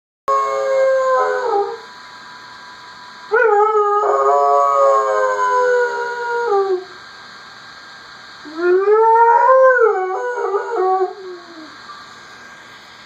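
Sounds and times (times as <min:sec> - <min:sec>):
dog howling: 0:00.3 - 0:01.8, 0:03.3 - 0:07.0, 0:08.5 - 0:11.8.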